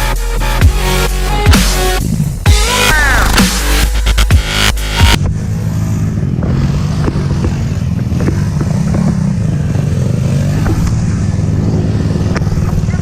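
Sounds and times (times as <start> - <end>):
electronic music: 0.0 - 5.3
atv engine running: 1.8 - 13.0
knocks and clatter: 6.4 - 9.6.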